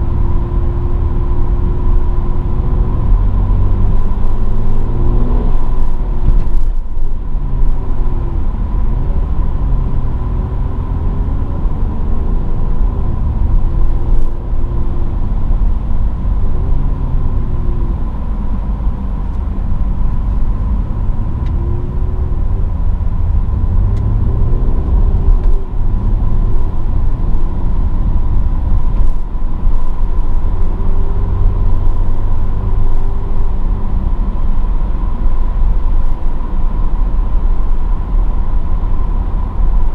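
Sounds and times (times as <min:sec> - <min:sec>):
car engine revving while driving: 0:00.0 - 0:39.9
low road rumble: 0:00.0 - 0:39.9.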